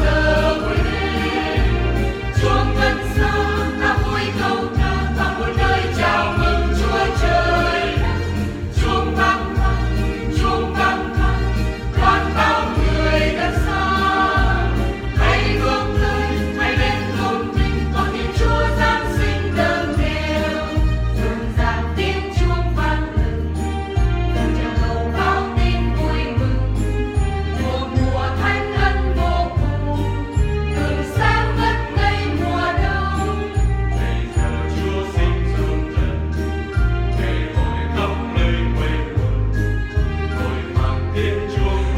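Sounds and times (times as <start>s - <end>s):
choir singing a hymn: 0.0s - 26.8s, 27.4s - 41.9s
instrumental backing with pulsing bass: 0.0s - 41.9s.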